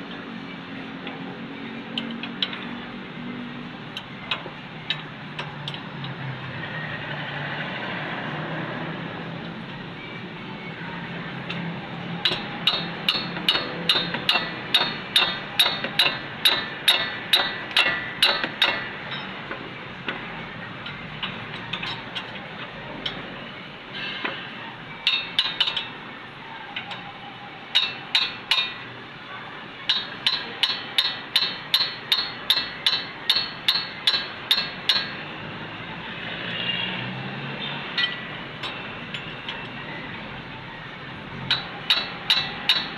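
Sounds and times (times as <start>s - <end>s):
hammer striking metal: 12.2s - 19.4s, 27.8s - 28.8s, 29.9s - 35.2s, 38.0s - 39.7s, 41.5s - 42.9s.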